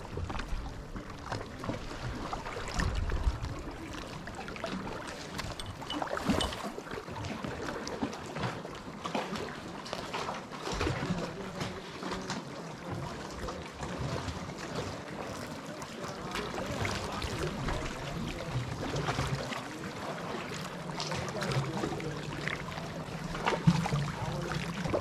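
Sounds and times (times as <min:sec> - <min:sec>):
water trickling: 0:00.0 - 0:08.1, 0:13.3 - 0:25.0
paddle splashes: 0:00.0 - 0:25.0
water lapping at hull: 0:00.0 - 0:25.0.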